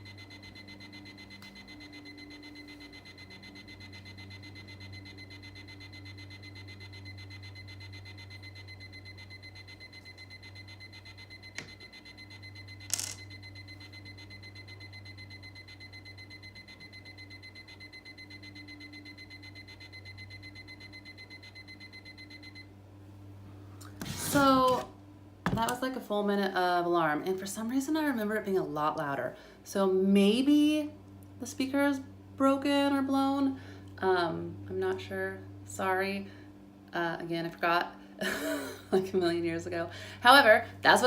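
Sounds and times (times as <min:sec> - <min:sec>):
pulsing electronic alarm beep: 0:00.0 - 0:22.7.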